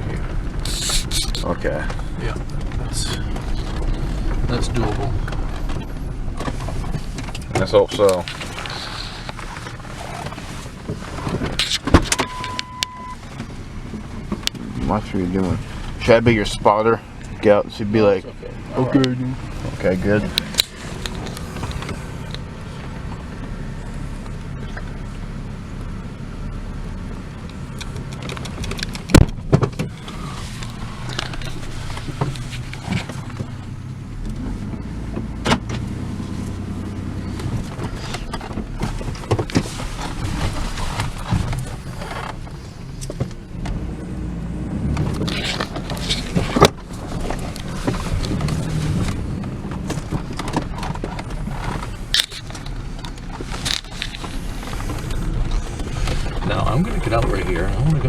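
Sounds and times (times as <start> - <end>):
knocks and rattles: 0.0 - 12.4, 44.8 - 58.0
car engine and road rumble: 0.0 - 58.0.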